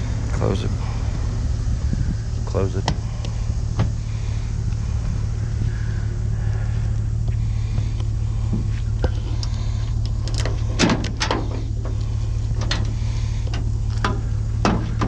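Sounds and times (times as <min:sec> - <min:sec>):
vehicle engine idling: 0:00.0 - 0:15.0
sharp knocks and clanks: 0:10.4 - 0:12.0, 0:12.6 - 0:15.0.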